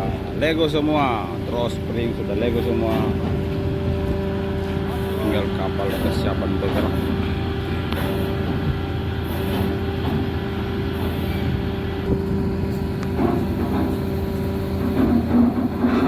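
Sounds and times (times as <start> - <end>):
ship diesel machinery droning: 0.0 - 16.0.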